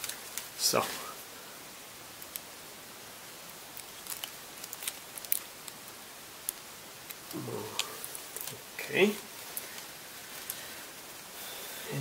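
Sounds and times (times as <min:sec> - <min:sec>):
light rustles of tape: 0:00.0 - 0:01.3, 0:03.7 - 0:11.0
steady hiss: 0:00.0 - 0:12.0.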